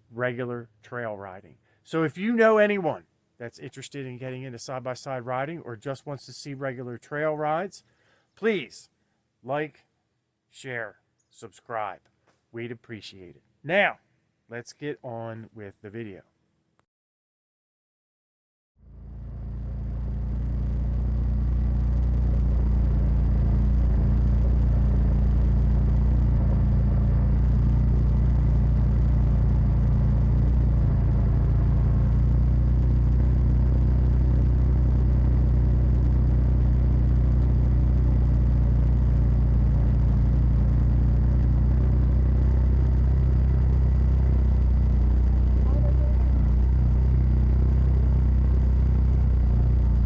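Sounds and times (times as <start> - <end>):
vehicle engine rumbling: 18.8 - 50.0.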